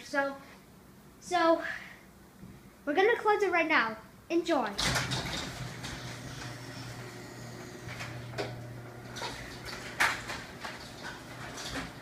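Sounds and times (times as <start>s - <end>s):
door clicks and rattles: 4.8s - 12.0s
garage door opener motor hum: 4.8s - 12.0s.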